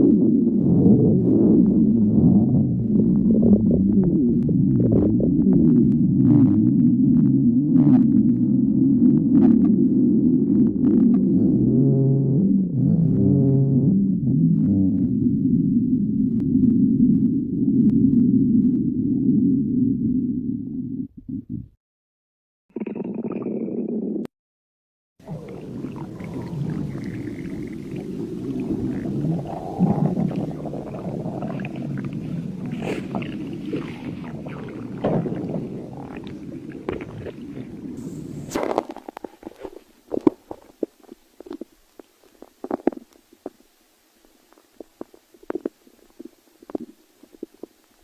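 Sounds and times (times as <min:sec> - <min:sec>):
stomach growling: 0:00.0 - 0:21.7, 0:22.7 - 0:24.3, 0:25.2 - 0:48.0
short gurgles and pops: 0:22.7 - 0:24.3, 0:25.2 - 0:43.7, 0:44.5 - 0:47.9.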